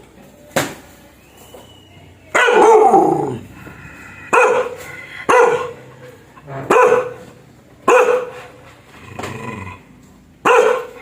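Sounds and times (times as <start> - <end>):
dog barking fiercely: 2.3 - 3.5, 4.3 - 6.0, 6.6 - 8.6, 10.4 - 11.0.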